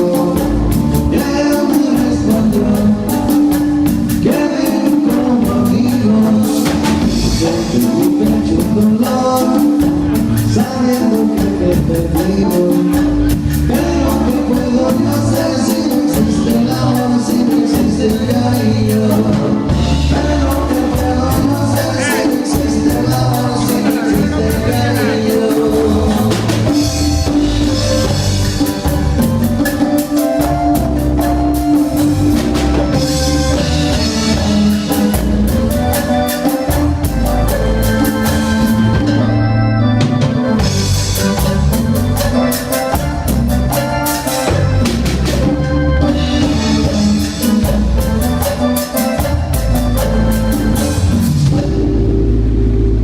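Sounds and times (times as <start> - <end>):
drum kit beat: 0.0 - 53.0
live band playing: 0.0 - 53.0.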